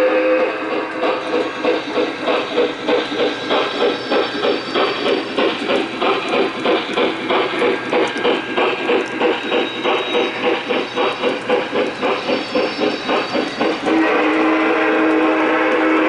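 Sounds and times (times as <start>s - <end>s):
steam whistle blowing a chord: 0.0s - 0.8s, 13.9s - 16.0s
model steam locomotive chuffing: 0.0s - 16.0s
wheels clicking on track: 0.0s - 16.0s.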